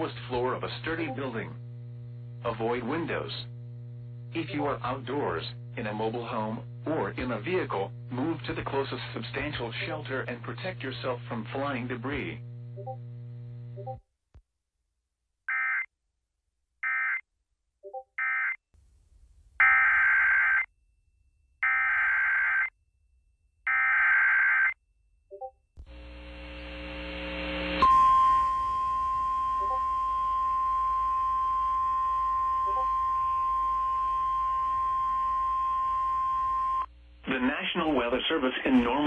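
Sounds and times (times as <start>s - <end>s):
single-pitch warning alarm tone: 27.8s - 36.9s.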